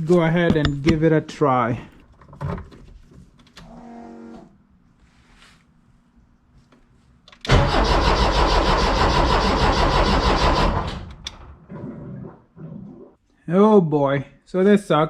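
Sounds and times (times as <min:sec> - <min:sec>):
engine cranking by starter: 0:07.4 - 0:11.6.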